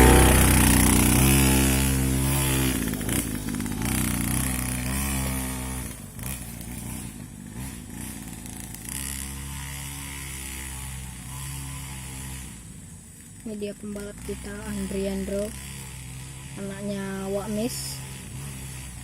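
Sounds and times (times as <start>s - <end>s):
small two-stroke engine running: 0.0s - 19.0s.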